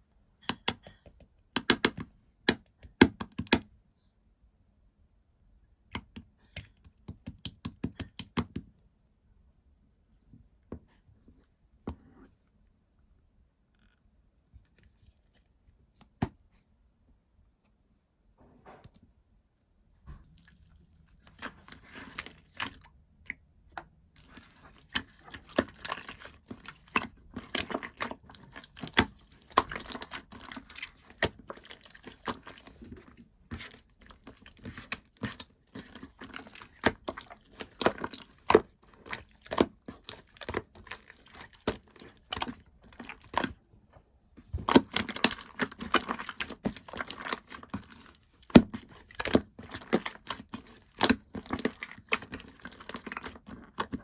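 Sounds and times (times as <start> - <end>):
slime squished by hand: 24.1 - 43.6, 44.4 - 54.0.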